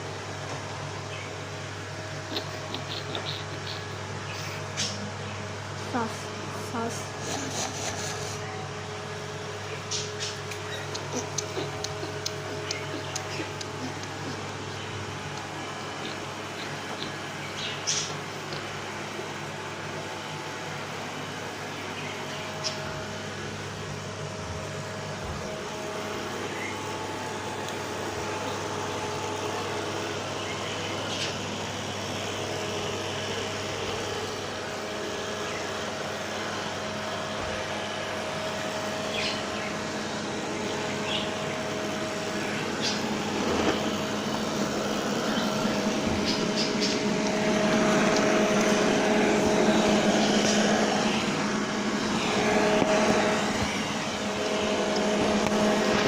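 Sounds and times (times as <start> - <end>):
vacuum cleaner motor running: 0.0 - 56.0.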